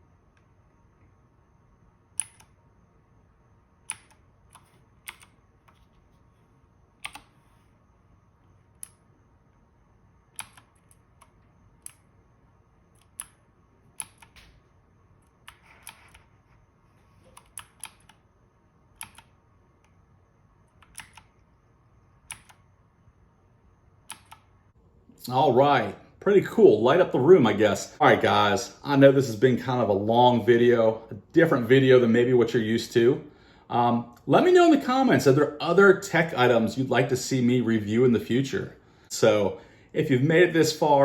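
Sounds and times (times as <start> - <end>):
mechanical keyboard key clicks: 2.2 - 2.5, 10.4 - 12.0, 14.0 - 14.4, 17.3 - 18.2, 19.0 - 19.3, 20.8 - 21.3, 22.3 - 22.6, 24.1 - 24.4.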